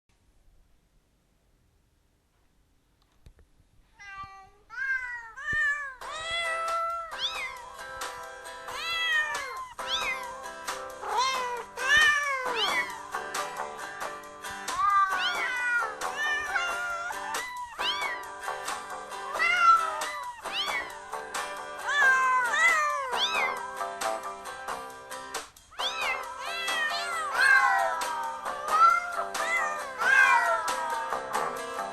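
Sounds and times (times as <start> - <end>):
kitten meowing: 4.0 - 7.6, 8.7 - 10.3, 11.0 - 13.0, 14.7 - 18.2, 19.4 - 20.9, 21.9 - 23.6, 25.8 - 28.0, 28.7 - 30.7
background music with held tones: 5.6 - 31.9.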